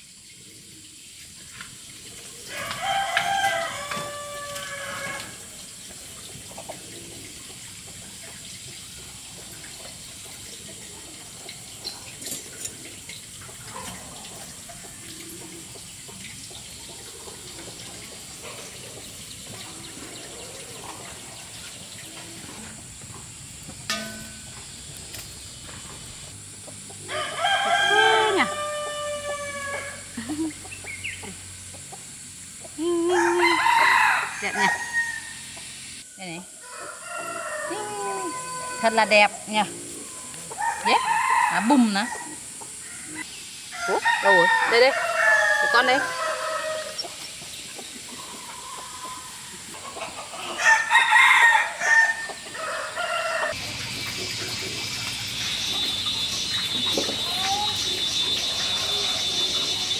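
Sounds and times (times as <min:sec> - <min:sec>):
rooster crowing: 0:02.5 - 0:05.5, 0:27.0 - 0:30.4, 0:32.9 - 0:35.5, 0:36.2 - 0:47.2, 0:50.4 - 0:53.8, 0:55.4 - 0:59.9.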